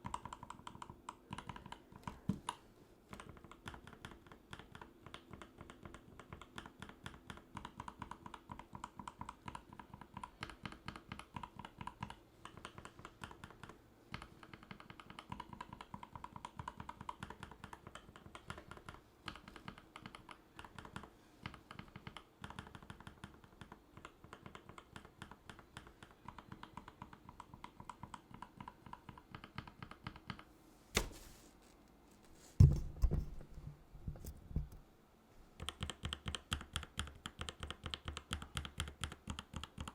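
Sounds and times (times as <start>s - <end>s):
fast mechanical keyboard typing: 0.0s - 2.1s, 3.2s - 30.4s, 35.6s - 39.9s
heavy thumps: 30.9s - 31.7s, 32.4s - 34.8s
sharp knock: 31.0s - 31.3s.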